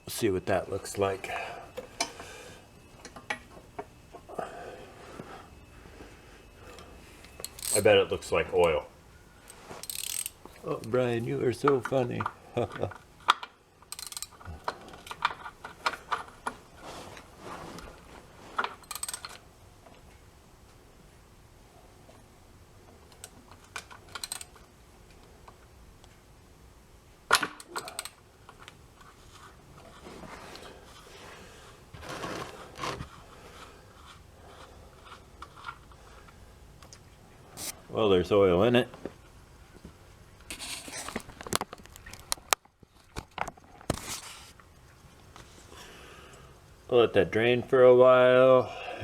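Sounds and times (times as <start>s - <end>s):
hand tools scraping and clicking: 6.7s - 7.9s, 9.4s - 11.0s
socket ratchet clicking: 9.8s - 10.4s, 13.8s - 14.4s, 24.1s - 24.6s.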